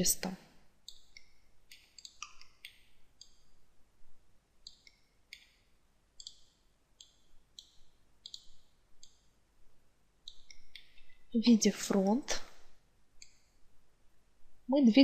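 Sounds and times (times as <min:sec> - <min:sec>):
computer mouse clicks: 0:00.8 - 0:03.5, 0:04.6 - 0:09.3, 0:10.3 - 0:11.2, 0:13.2 - 0:13.6.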